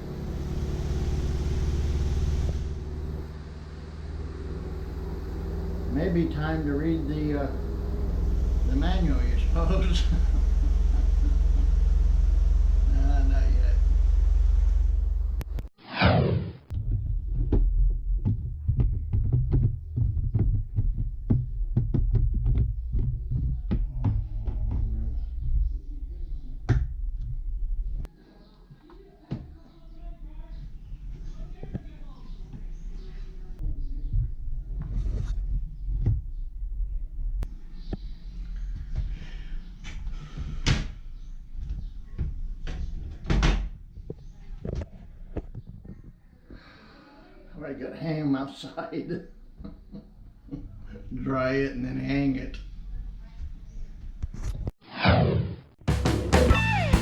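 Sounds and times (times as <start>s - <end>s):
washer-dryer rumbling: 0.0s - 15.7s
falling whine: 0.0s - 16.5s, 56.0s - 57.0s
drum thumping: 55.8s - 57.0s.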